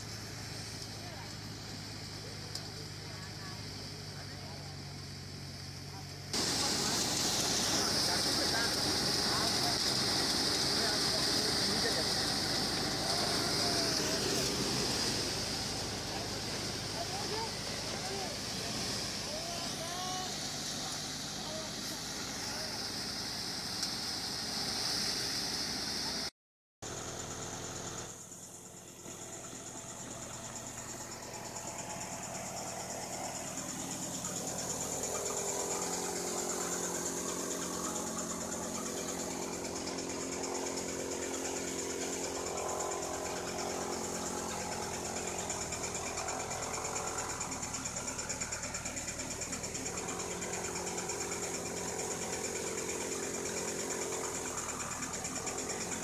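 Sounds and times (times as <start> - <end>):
farm machinery engine droning: 0.0 - 56.0.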